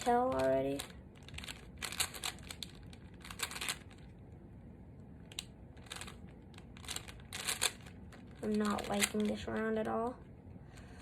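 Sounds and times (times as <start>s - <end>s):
plastic cube clicking: 0.3s - 4.0s, 5.2s - 9.2s.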